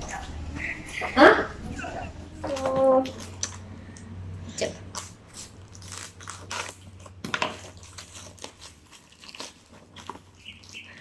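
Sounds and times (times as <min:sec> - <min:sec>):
packaging crackling: 0:02.5 - 0:11.0.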